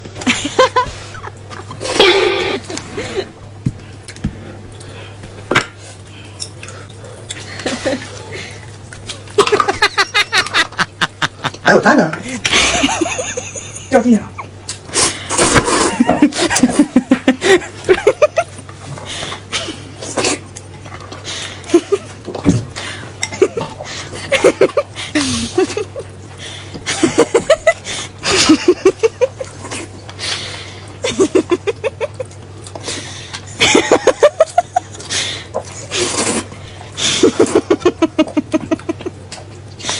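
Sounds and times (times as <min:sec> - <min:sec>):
person laughing hard: 0:00.2 - 0:03.3, 0:09.4 - 0:14.5, 0:15.8 - 0:18.5, 0:23.3 - 0:26.1, 0:26.9 - 0:29.8, 0:31.0 - 0:32.3, 0:33.6 - 0:35.0, 0:37.0 - 0:39.1.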